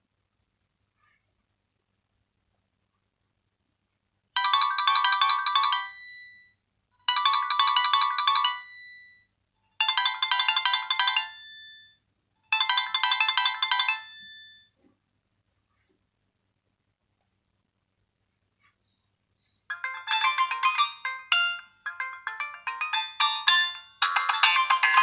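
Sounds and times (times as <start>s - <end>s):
mobile phone ringtone: 4.4s - 14.7s, 19.7s - 25.0s.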